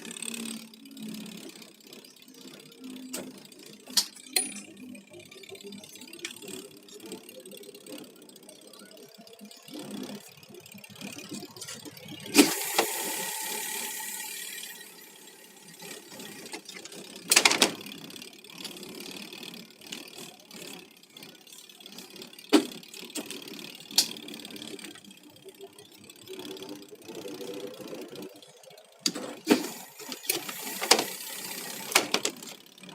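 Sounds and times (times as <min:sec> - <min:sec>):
washing machine motor hum: 0:05.2 - 0:18.5, 0:24.2 - 0:32.9
sharp clicks and knocks: 0:29.0 - 0:32.6.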